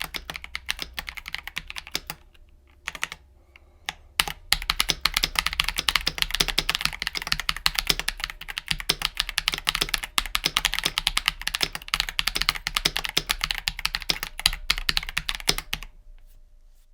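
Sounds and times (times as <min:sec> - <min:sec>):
typing on a mechanical keyboard: 0:00.0 - 0:03.2, 0:03.9 - 0:15.9.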